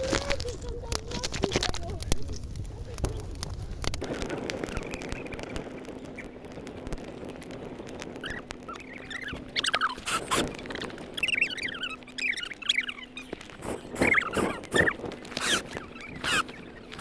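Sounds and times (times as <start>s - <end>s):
bonfire crackling and popping: 0.0s - 17.0s
high wavering squeaks and whistles: 8.1s - 17.0s.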